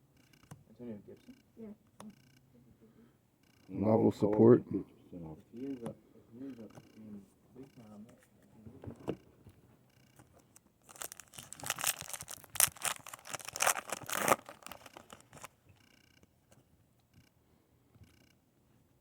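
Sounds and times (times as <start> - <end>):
foil wrapper tearing and crinkling: 10.9 - 15.5.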